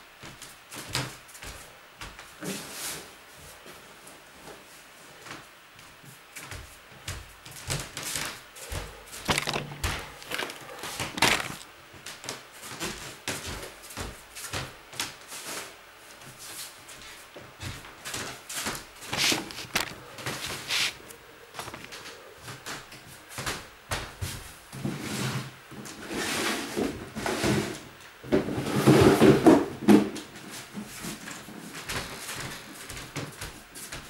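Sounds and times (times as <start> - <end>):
household items knocking: 9.3 - 11.6.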